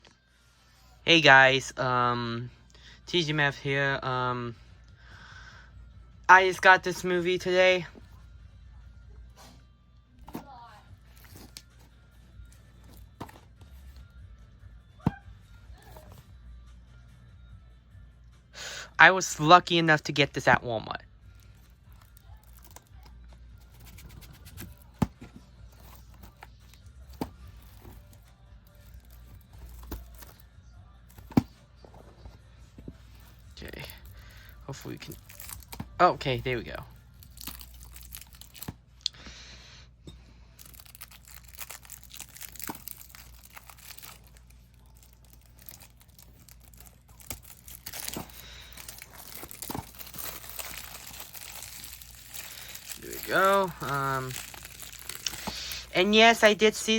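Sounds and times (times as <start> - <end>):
plastic wrap crinkling: 21.4 - 25.1, 25.7 - 30.5, 33.0 - 38.7, 40.6 - 56.6.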